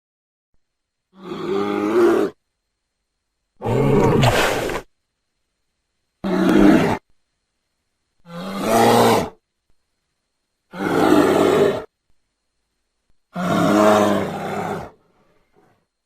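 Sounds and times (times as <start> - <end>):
bear roar: 1.2 - 2.4, 3.6 - 4.9, 6.2 - 7.0, 8.2 - 9.4, 10.7 - 11.9, 13.3 - 15.0.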